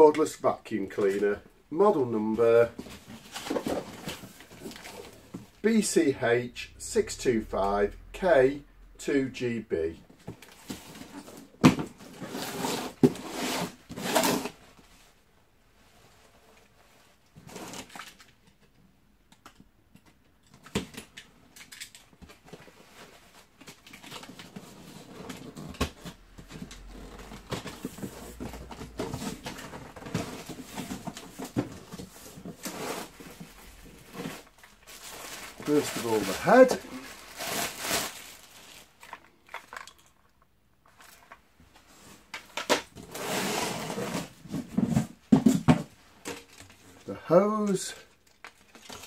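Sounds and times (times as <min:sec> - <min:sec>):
cardboard packaging handled: 0:22.3 - 0:39.6.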